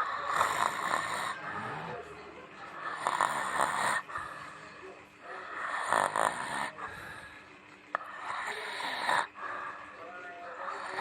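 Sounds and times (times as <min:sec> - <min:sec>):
person snoring: 0:00.0 - 0:02.1, 0:02.8 - 0:04.3, 0:05.4 - 0:07.2, 0:08.0 - 0:09.7, 0:10.5 - 0:11.0.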